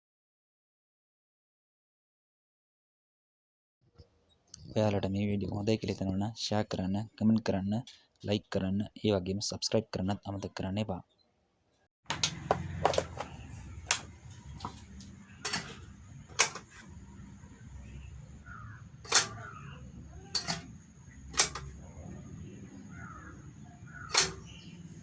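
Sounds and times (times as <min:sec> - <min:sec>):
sharp clicks and knocks: 0:12.1 - 0:17.0, 0:19.0 - 0:19.6, 0:20.2 - 0:22.1, 0:24.0 - 0:24.9
steady low hum: 0:12.2 - 0:25.0
faint short calls: 0:14.6 - 0:25.0.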